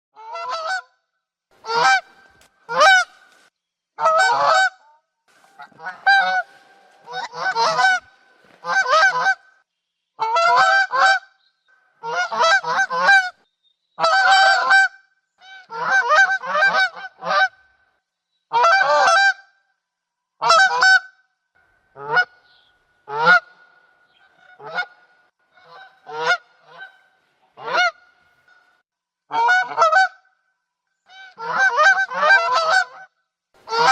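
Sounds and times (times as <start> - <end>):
geese honking: 1.6 - 9.6, 10.2 - 13.4, 14.0 - 17.5, 21.7 - 30.1, 31.1 - 33.0, 33.6 - 33.9.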